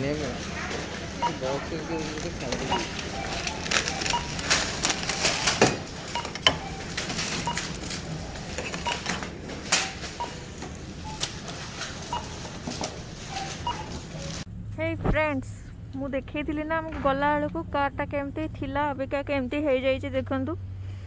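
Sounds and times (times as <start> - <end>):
groceries clattering: 0.0 - 14.4
barcode scanner beeps: 1.0 - 9.2, 9.8 - 12.6, 13.2 - 14.4.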